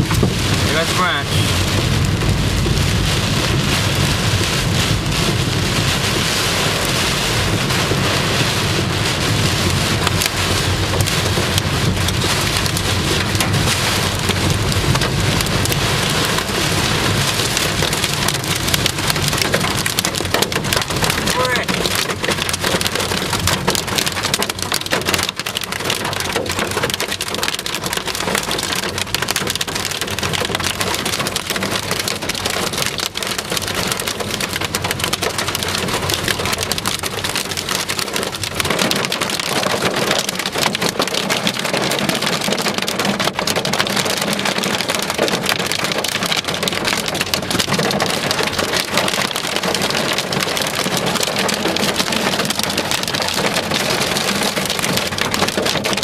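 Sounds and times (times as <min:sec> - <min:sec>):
heavy rain and hail pelting: 0:00.0 - 0:56.0.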